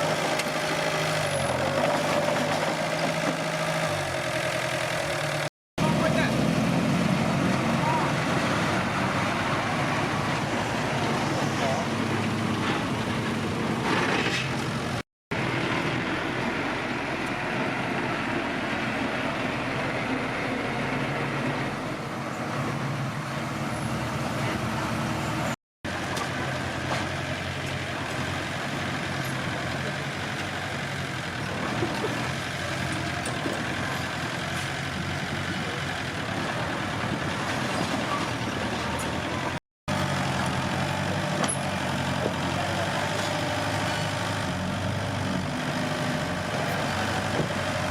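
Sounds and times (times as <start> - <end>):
bulldozer diesel engine running: 0.0 - 47.9.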